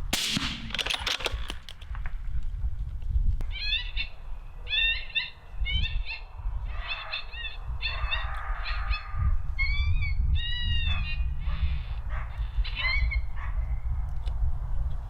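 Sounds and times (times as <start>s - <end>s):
low wind rumble: 0.0s - 15.0s
coyotes yipping and yelping: 3.5s - 14.0s.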